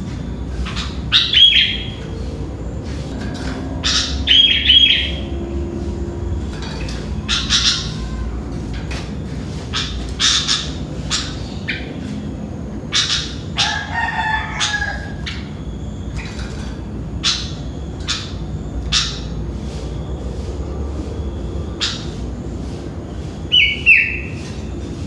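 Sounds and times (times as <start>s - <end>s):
steady low rumble: 0.0s - 25.0s
bird giving sharp calls: 0.6s - 2.4s, 3.2s - 5.5s, 7.1s - 8.4s, 9.7s - 12.1s, 12.8s - 19.9s, 23.5s - 24.5s
rooster crowing: 13.6s - 15.7s.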